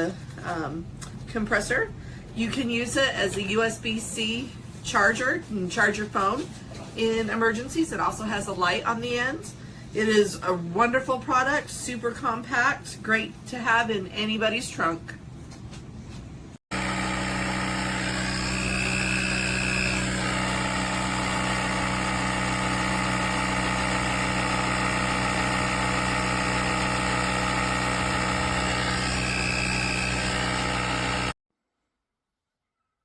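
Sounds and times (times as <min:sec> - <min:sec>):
motor humming: 0:16.7 - 0:31.4.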